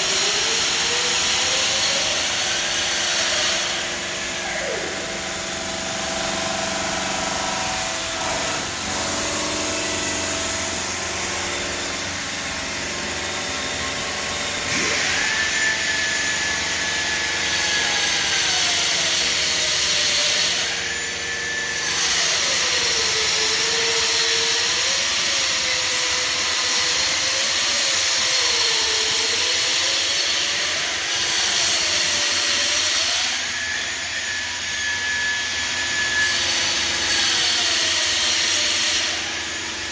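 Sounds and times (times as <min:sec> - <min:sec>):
motor whine: 0:00.0 - 0:26.9.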